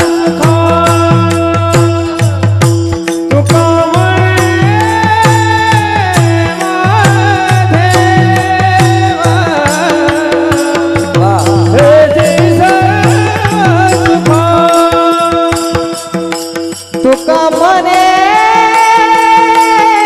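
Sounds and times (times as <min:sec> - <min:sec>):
low drum beat: 0:00.0 - 0:15.6
person singing devotional song: 0:00.0 - 0:20.0.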